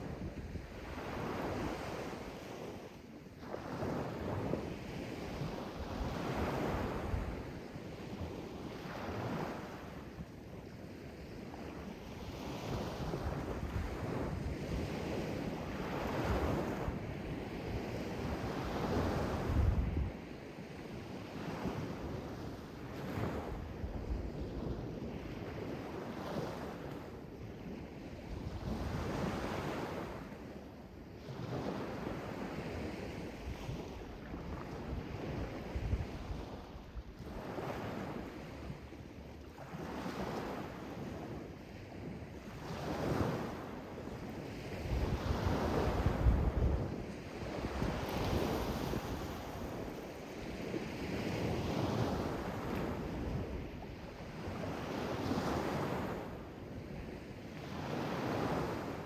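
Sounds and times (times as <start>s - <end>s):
wind buffeting microphone: 12.7s - 20.2s, 44.6s - 53.8s.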